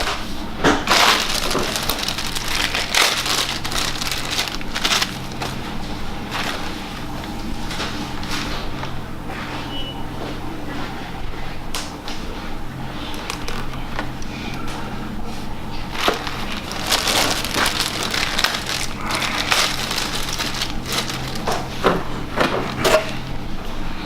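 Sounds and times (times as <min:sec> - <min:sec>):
steady low hum: 0:00.0 - 0:24.0
packaging crinkling: 0:00.8 - 0:08.3, 0:13.0 - 0:14.3, 0:15.8 - 0:23.2.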